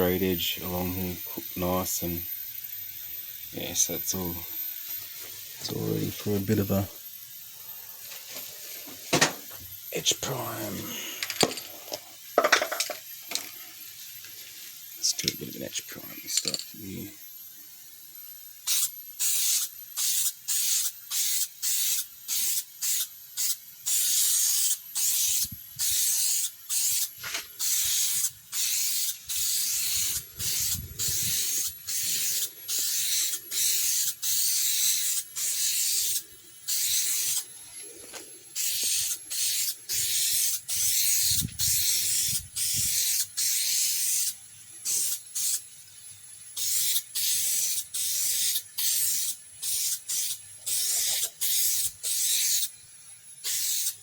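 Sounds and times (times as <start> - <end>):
spray primer hissing: 18.6 - 45.8, 46.5 - 54.0.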